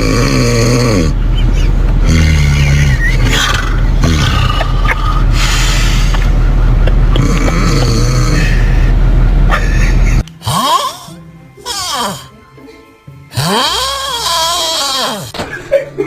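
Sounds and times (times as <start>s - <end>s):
loud rough snoring: 0.0s - 1.2s, 2.0s - 6.1s, 7.1s - 8.8s, 10.4s - 11.1s, 13.3s - 15.3s.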